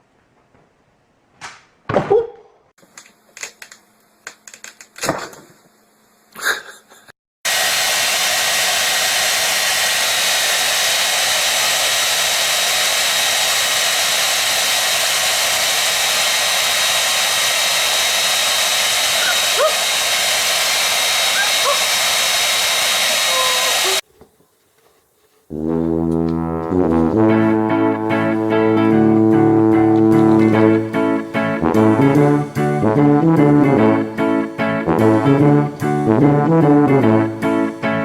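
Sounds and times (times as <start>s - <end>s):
electric appliance blowing: 7.5s - 24.1s, 25.5s - 37.4s.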